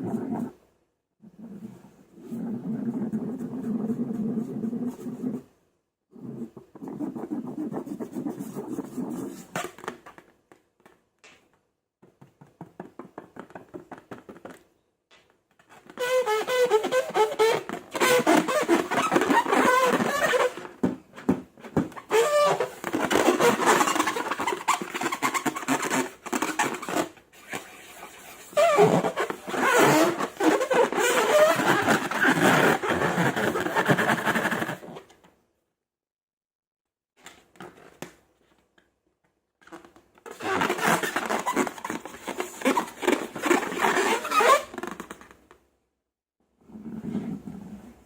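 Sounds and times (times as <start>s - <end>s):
rubbery squeaks: 0.0s - 0.6s, 6.2s - 10.1s, 15.7s - 20.8s, 21.7s - 35.0s, 39.8s - 45.3s.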